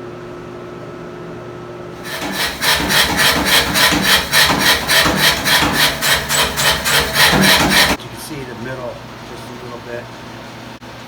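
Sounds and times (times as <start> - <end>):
hand tool rasping on steel: 2.0 - 8.0.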